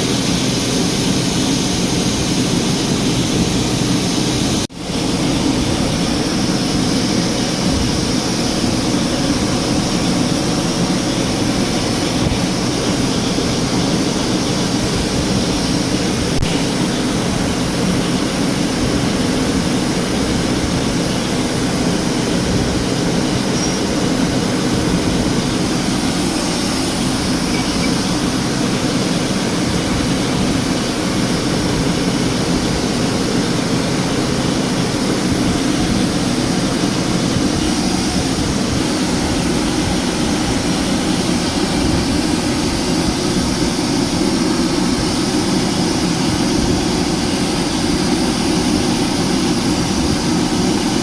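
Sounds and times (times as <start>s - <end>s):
car engine running: 0.0s - 51.0s.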